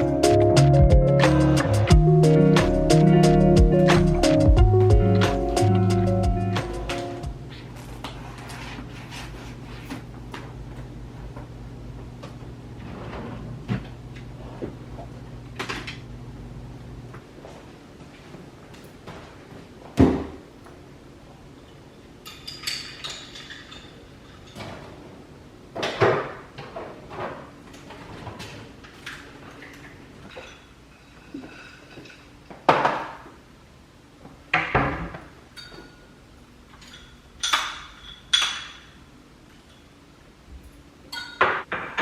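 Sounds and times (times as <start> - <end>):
dishes and utensils clattering: 22.2 - 25.1, 29.1 - 33.1, 34.9 - 40.0, 41.1 - 42.0.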